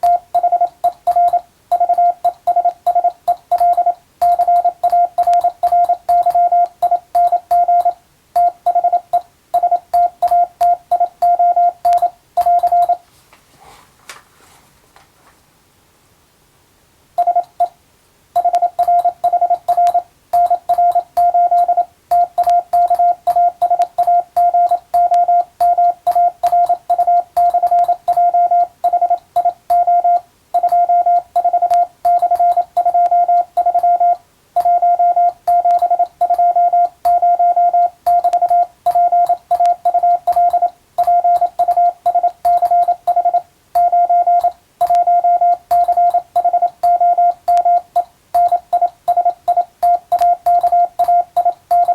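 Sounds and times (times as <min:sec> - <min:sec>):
morse code tone: 0:00.0 - 0:13.0, 0:17.2 - 0:17.8, 0:18.4 - 0:51.9
faint keying clicks: 0:38.1 - 0:51.9.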